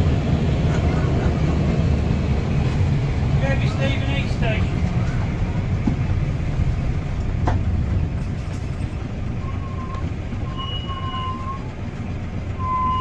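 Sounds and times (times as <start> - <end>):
bus engine rumbling: 0.0 - 13.0
thin steady whistle: 9.4 - 11.7, 12.6 - 13.0.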